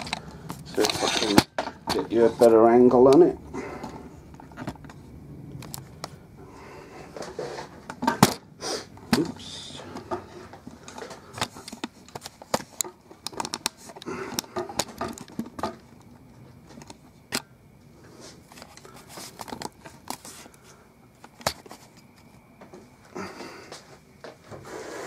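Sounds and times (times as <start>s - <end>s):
clicks taps and rustles: 9.0s - 17.5s, 18.5s - 22.9s.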